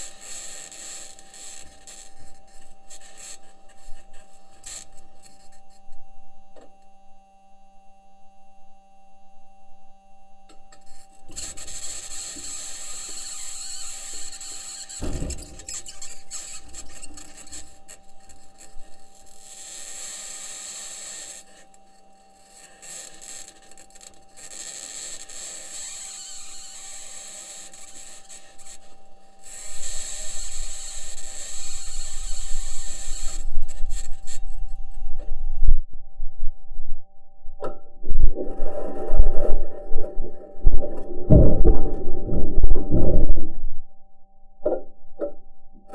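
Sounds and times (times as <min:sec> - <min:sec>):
faint steady hums: 0:00.0 - 0:45.9
rover wheels scraping over rock: 0:11.3 - 0:19.1.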